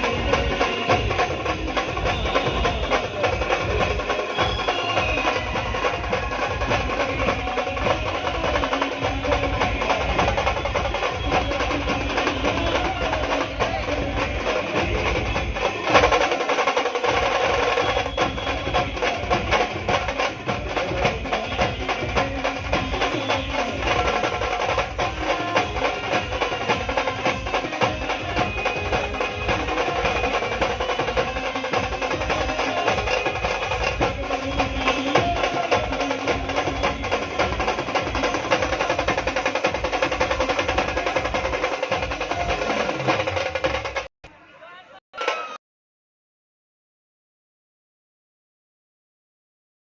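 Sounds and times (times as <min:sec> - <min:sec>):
fast drum beat: 0:00.0 - 0:44.1
live band music: 0:17.7 - 0:44.1.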